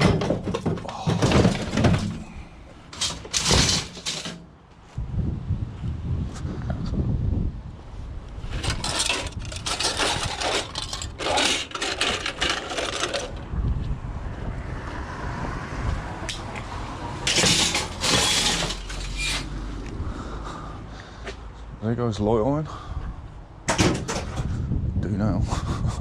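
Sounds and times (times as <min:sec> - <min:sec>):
scrap metal clattering and scraping: 0:00.0 - 0:04.6, 0:08.4 - 0:13.5, 0:17.2 - 0:19.6, 0:23.7 - 0:24.6.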